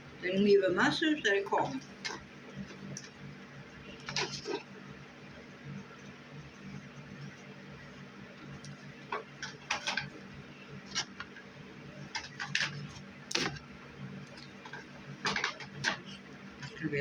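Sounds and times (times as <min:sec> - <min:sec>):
steady low hum: 0:00.0 - 0:17.0
objects being handled: 0:03.9 - 0:04.7, 0:08.7 - 0:10.2, 0:10.8 - 0:13.7, 0:14.3 - 0:16.8.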